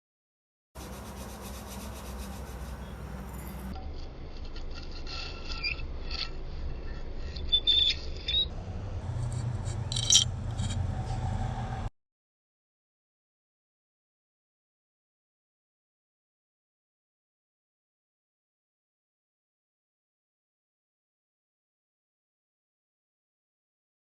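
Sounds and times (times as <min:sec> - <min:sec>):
brake pad scraping brake disc: 0:09.0 - 0:11.4.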